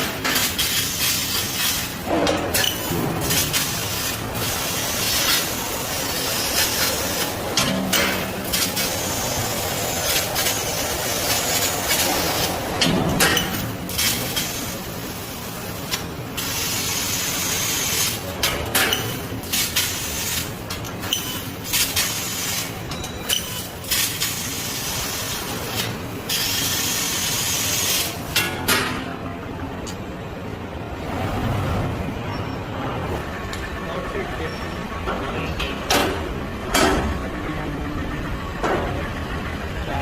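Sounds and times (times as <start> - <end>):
laser cutter gas jet hiss: 13.6 - 18.3, 23.8 - 28.2.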